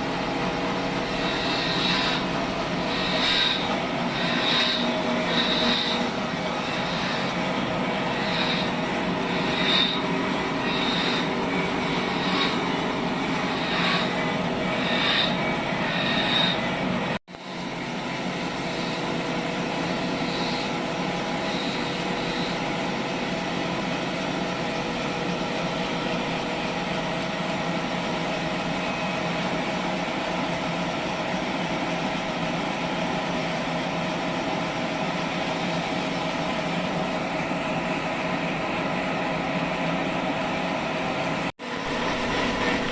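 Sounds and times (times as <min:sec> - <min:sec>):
sawmill saw cutting wood: 0:00.0 - 0:23.0, 0:41.6 - 0:42.9
short high squeaks: 0:01.2 - 0:16.7.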